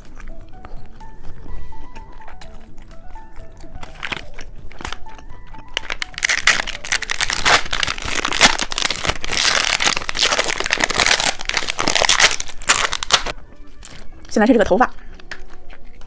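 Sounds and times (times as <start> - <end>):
faint background music: 0.0 - 16.0
plastic wrapper crinkling: 3.8 - 14.4.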